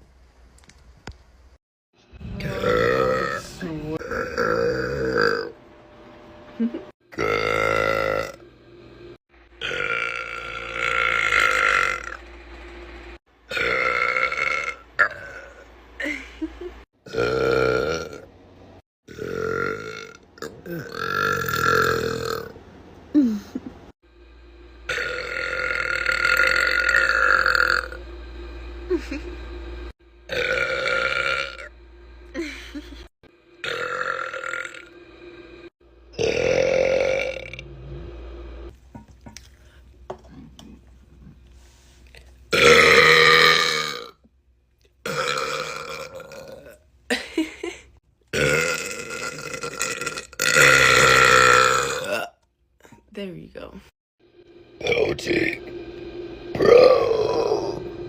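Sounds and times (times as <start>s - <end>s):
woman burping: 2.5s - 5.5s, 6.6s - 8.4s, 17.1s - 18.2s, 19.1s - 22.5s, 32.3s - 33.0s, 48.4s - 53.0s.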